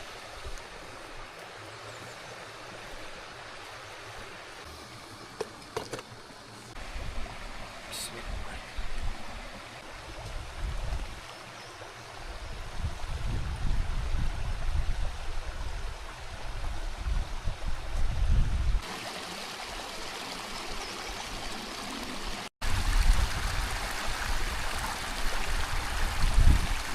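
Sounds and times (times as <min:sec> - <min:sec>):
running water rushing: 0:00.0 - 0:18.1, 0:18.8 - 0:26.9
wind rumbling on microphone: 0:10.0 - 0:11.3, 0:12.1 - 0:18.8, 0:22.6 - 0:26.9.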